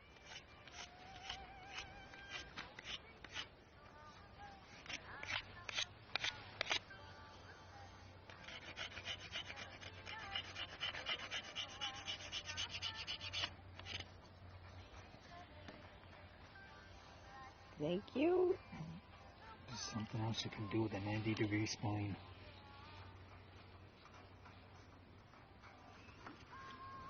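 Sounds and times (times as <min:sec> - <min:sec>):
rasp scraping on wood: 0:08.3 - 0:14.0.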